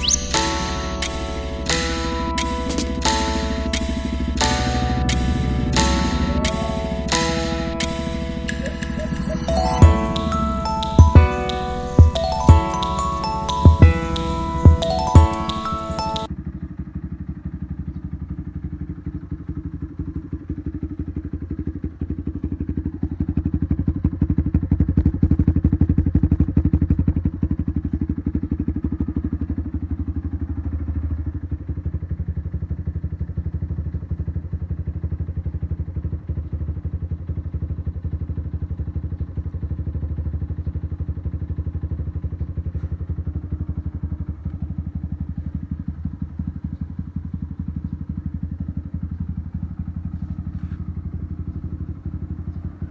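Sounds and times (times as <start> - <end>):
motorcycle engine idling: 16.3 - 52.9.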